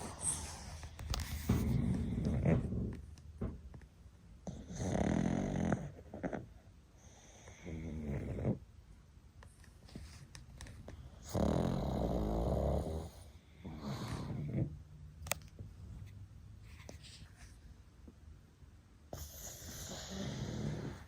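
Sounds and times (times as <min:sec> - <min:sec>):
dog snoring: 0:00.0 - 0:03.0, 0:04.4 - 0:08.6, 0:11.0 - 0:14.8, 0:19.1 - 0:21.0.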